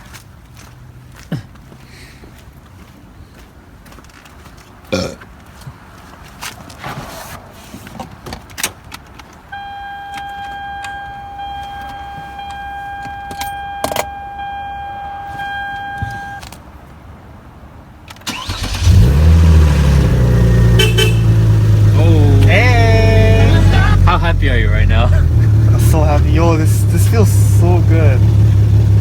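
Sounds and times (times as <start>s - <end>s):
car warning tone: 9.5s - 16.5s, 20.0s - 29.0s
car engine cranking and running: 18.1s - 29.0s.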